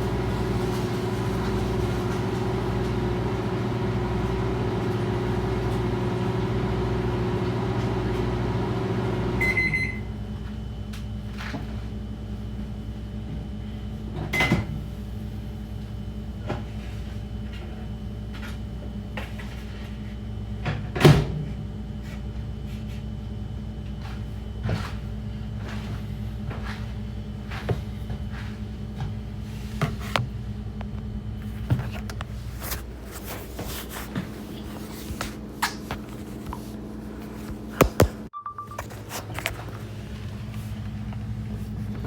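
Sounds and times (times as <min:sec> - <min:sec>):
microwave oven humming: 0:00.0 - 0:42.0
short high beep: 0:38.4 - 0:38.9.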